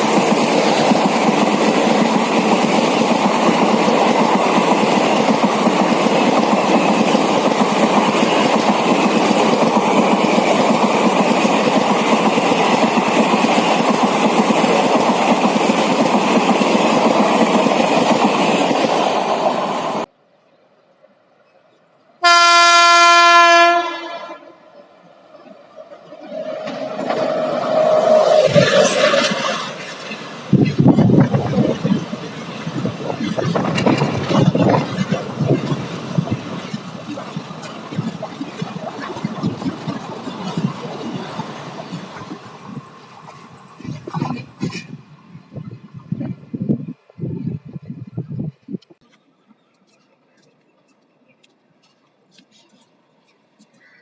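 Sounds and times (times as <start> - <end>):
train wheels rumbling on rails: 0.0 - 20.1, 25.0 - 53.8
locomotive horn: 22.2 - 24.6.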